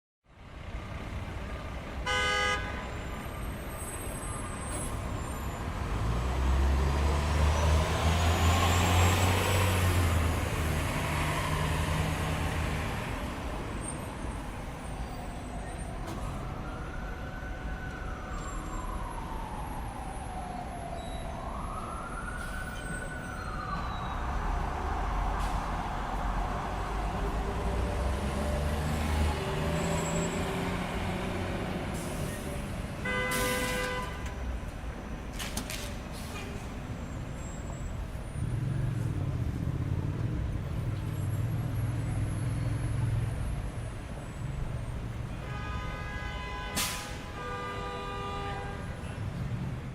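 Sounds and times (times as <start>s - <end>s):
steady traffic noise: 0.2s - 49.9s
car horn toot: 2.0s - 2.8s, 33.0s - 34.2s, 45.4s - 48.9s
ambulance siren wailing: 14.1s - 25.4s
heavy vehicle engine rumble: 30.8s - 45.3s.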